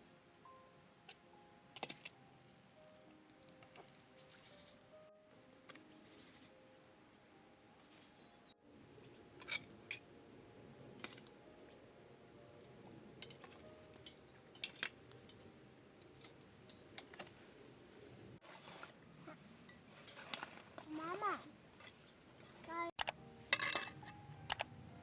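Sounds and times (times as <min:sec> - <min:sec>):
cutlery clinking against dishes: 0:23.5 - 0:24.2.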